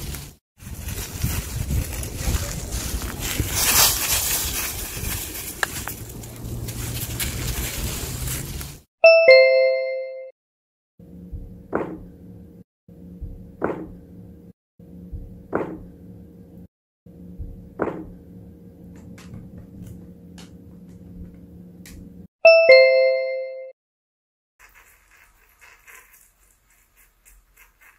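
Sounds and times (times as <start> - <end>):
two-note electronic chime: 9.0 - 10.3, 22.5 - 23.7
low hum: 11.0 - 22.3.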